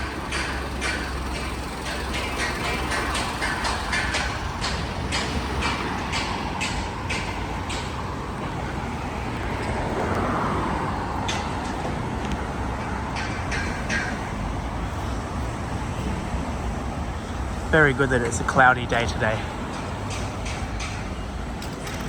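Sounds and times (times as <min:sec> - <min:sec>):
street traffic: 0:00.0 - 0:22.0
vehicle passing: 0:03.6 - 0:21.0.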